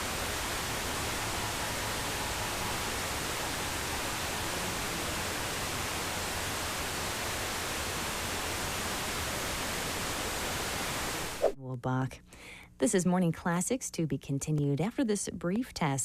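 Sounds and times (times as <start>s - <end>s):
radio static hiss: 0.0s - 11.6s.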